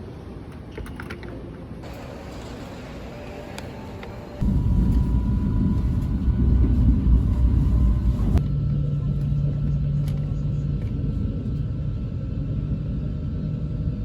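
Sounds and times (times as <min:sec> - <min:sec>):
faint high whine: 0:01.8 - 0:14.0
low hum: 0:01.8 - 0:14.0
loud low rumble: 0:04.4 - 0:14.0.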